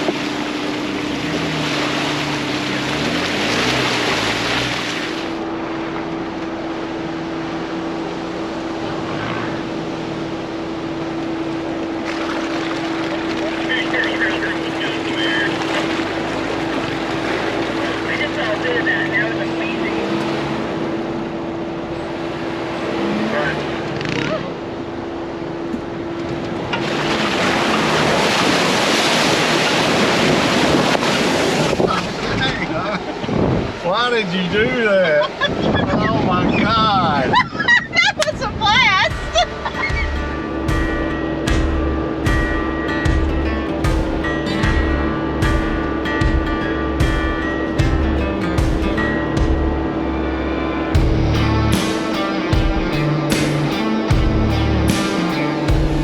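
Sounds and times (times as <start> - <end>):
splash of water and mud: 0.0 - 5.4, 12.0 - 18.4, 26.7 - 32.8
car engine drone: 0.0 - 56.0
tyre and wind noise: 28.0 - 33.9.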